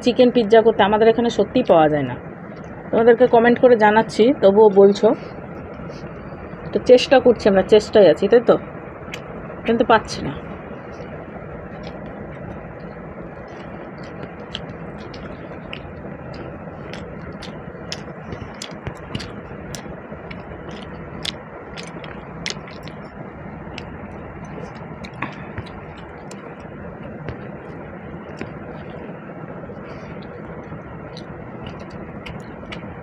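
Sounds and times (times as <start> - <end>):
background hum: 0.0 - 33.0
wet chewing and mouth clicks: 2.5 - 2.8, 9.0 - 9.3, 10.8 - 33.0.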